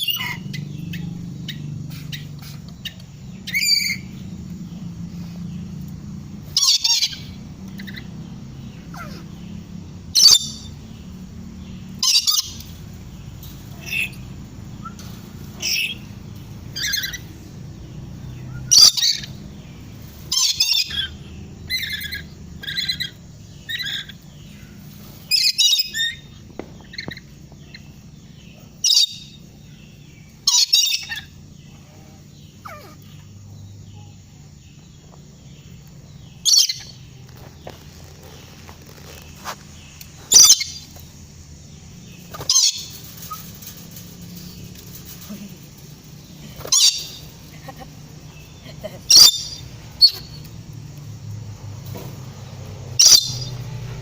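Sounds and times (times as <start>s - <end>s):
parrot giving shrill calls: 40.3s - 40.8s.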